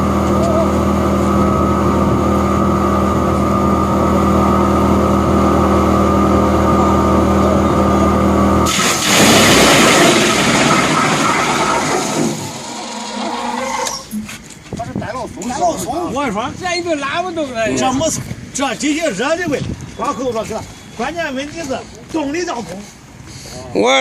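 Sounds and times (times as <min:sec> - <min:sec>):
wood chipper engine running: 0:00.0 - 0:13.8.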